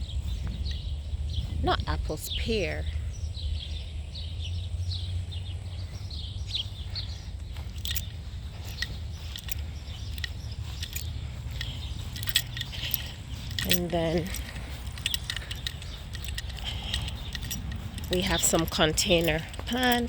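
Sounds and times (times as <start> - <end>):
small birds chirping: 0.0 - 20.0
steady low rumble: 0.0 - 20.0
sharp ticks: 5.4 - 20.0.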